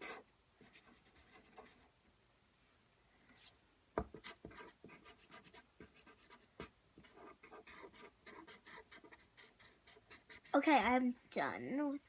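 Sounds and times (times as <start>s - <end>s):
pencil scratching on paper: 0.0s - 1.9s, 3.4s - 10.9s.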